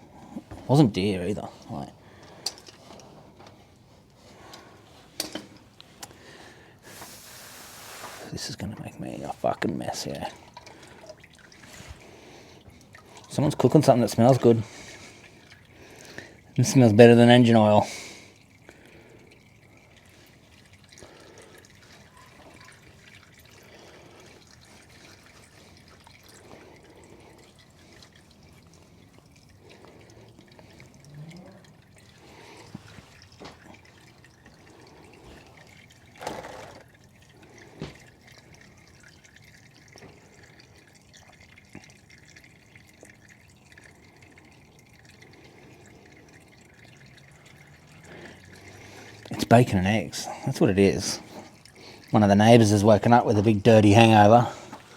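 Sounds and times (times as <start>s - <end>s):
oil dripping into a pan: 0.0s - 7.4s, 8.0s - 54.9s.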